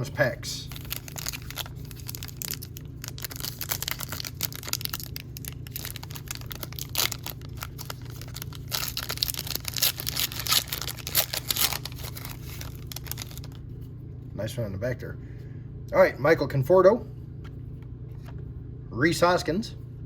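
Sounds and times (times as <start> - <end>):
foil wrapper crinkling: 0.7 - 13.6.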